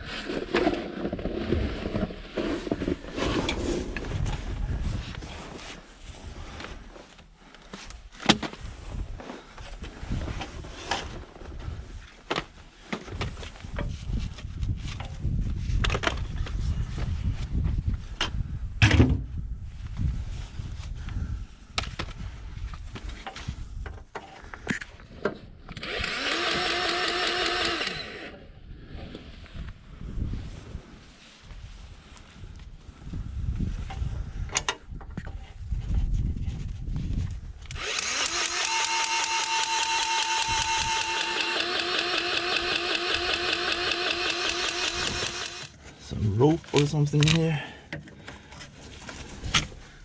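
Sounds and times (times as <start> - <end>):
harsh mechanical buzz: 25.8 - 28.4, 37.7 - 45.7.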